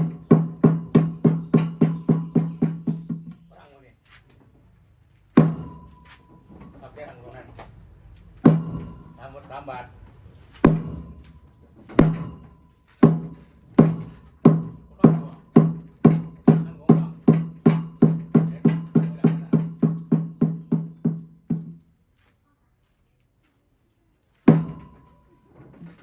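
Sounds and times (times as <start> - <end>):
wooden log drum knocking: 0.0 - 3.5, 5.4 - 6.0, 8.4 - 9.0, 10.6 - 11.2, 12.0 - 21.8.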